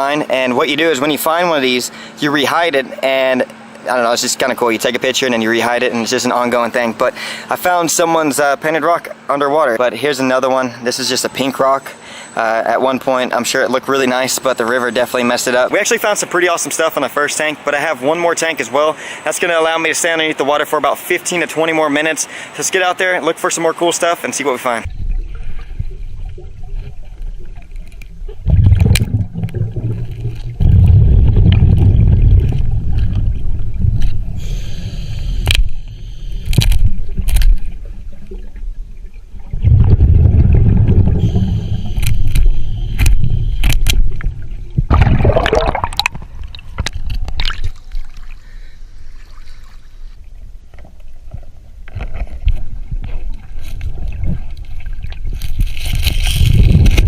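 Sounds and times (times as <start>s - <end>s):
scuba breathing bubbles: 28.3s - 37.2s, 39.4s - 50.2s.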